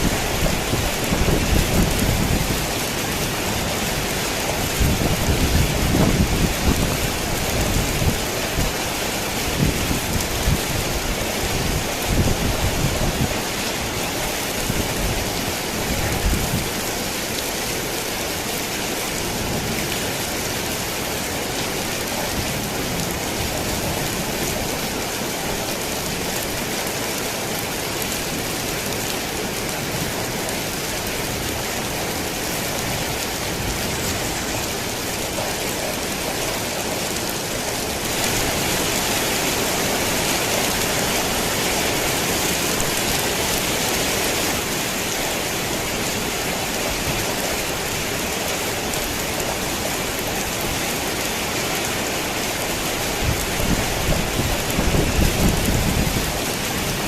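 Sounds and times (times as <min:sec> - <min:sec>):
thunder rumbling: 0:00.0 - 0:08.8
rain on a tin roof: 0:00.0 - 0:57.0.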